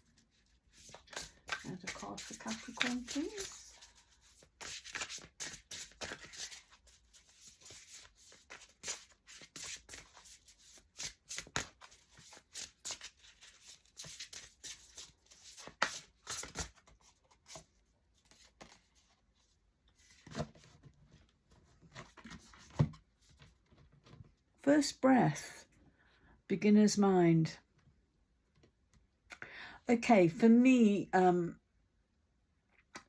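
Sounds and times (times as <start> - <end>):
cards being shuffled: 0.4 - 19.2.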